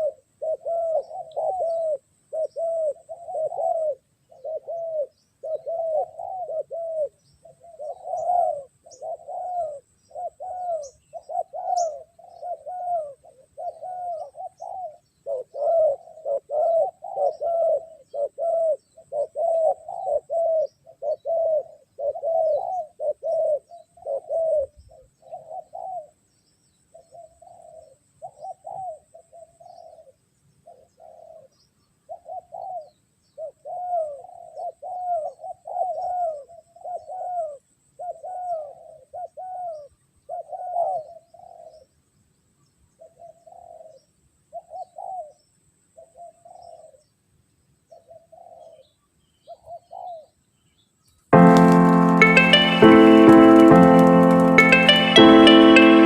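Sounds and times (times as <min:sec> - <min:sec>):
doves cooing: 0:00.0 - 0:24.7.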